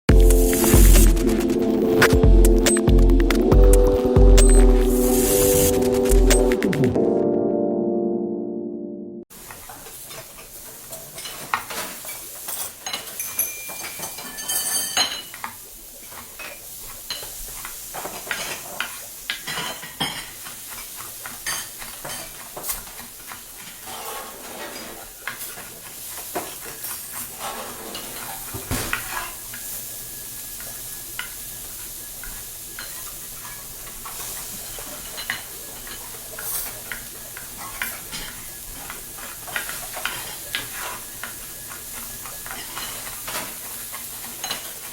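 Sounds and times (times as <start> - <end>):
frying sizzle: 0.1 - 7.0, 9.3 - 44.9
dishes and cutlery clinking: 9.4 - 29.5, 32.2 - 44.9.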